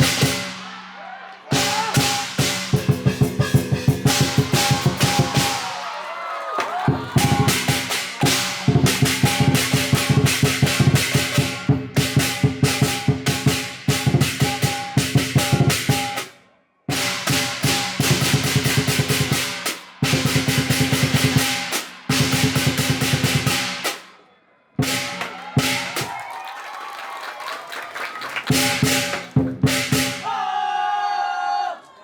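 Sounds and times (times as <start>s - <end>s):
cymbals clashing: 0.0s - 6.0s, 7.2s - 16.3s
large drum beating fast: 1.5s - 5.7s.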